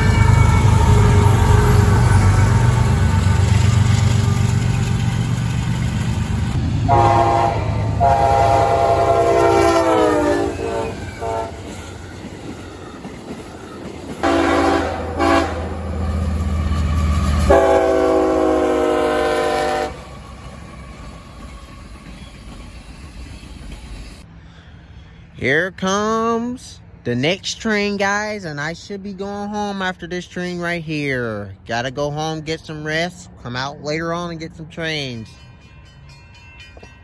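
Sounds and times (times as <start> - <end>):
passing train rumble: 0.0 - 37.0
locomotive air horn blasts: 6.8 - 11.8, 14.2 - 16.0, 17.4 - 20.1.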